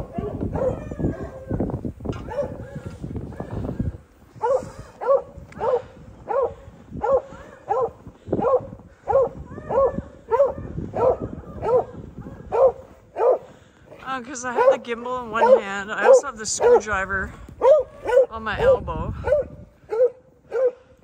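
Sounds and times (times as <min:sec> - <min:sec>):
dog barking: 0:00.0 - 0:01.6, 0:02.2 - 0:03.5, 0:04.4 - 0:13.5, 0:14.5 - 0:16.9, 0:17.6 - 0:18.4, 0:19.2 - 0:20.9.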